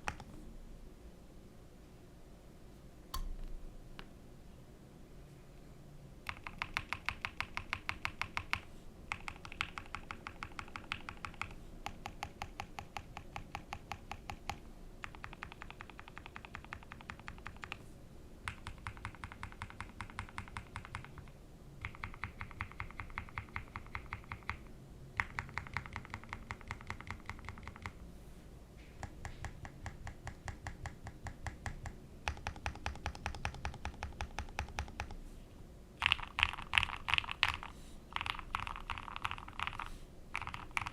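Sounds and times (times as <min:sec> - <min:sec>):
typing on mechanical keyboard: 0:00.0 - 0:00.3, 0:06.2 - 0:17.8, 0:18.5 - 0:28.0, 0:29.0 - 0:35.2, 0:36.0 - 0:40.9.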